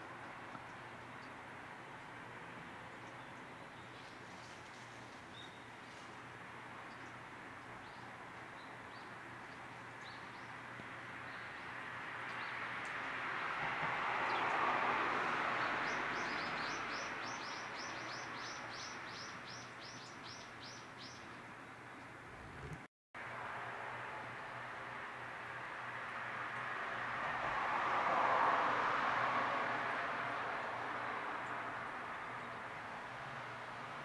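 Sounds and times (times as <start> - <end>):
small birds chirping: 15.8 - 22.8
broad rushing noise: 22.2 - 22.9.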